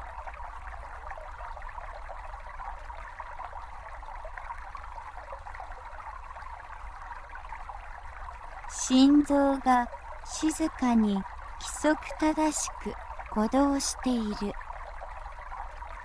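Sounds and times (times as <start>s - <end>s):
brook babbling over stones: 0.0s - 16.0s.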